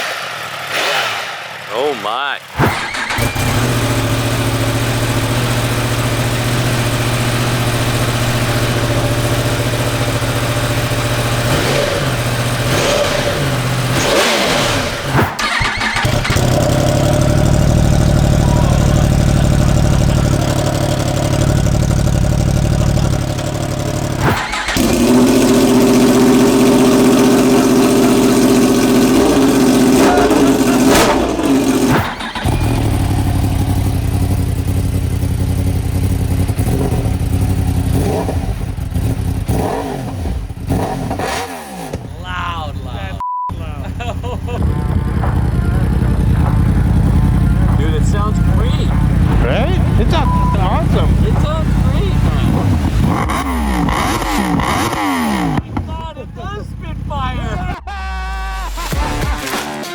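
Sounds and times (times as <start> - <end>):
motorcycle engine running loud: 2.5 - 57.8.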